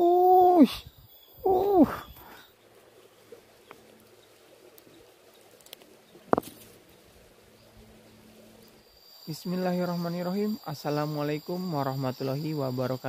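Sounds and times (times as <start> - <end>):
faint steady hum: 0.0 - 13.0
small clicks: 4.8 - 6.6.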